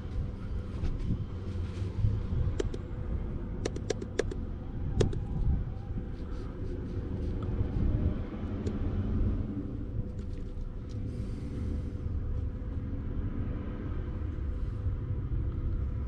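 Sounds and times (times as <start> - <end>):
vehicle engine rumble: 0.0 - 16.0
sharp clicks: 2.5 - 2.8, 3.6 - 4.4, 5.0 - 5.3.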